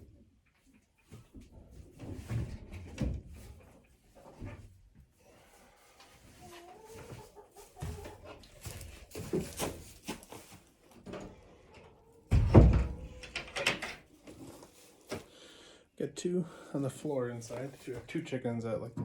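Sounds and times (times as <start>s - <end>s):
knocking and rustling: 7.8s - 11.4s, 12.3s - 15.2s
heavy thump: 12.3s - 13.1s.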